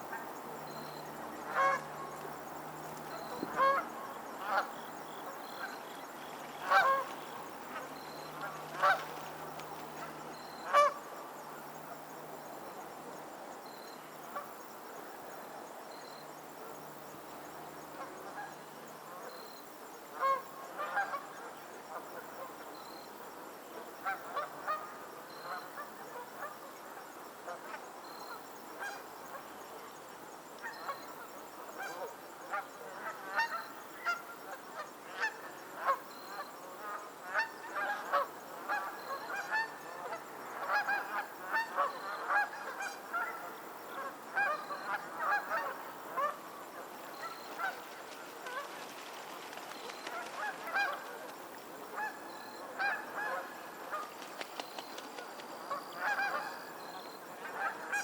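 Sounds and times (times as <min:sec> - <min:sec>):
geese honking: 0:06.6 - 0:07.8, 0:47.2 - 0:51.2.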